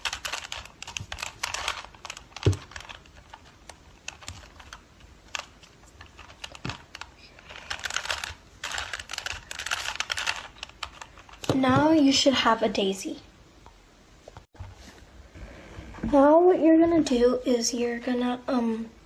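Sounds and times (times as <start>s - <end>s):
plastic puzzle cube clicking: 0.0s - 11.5s.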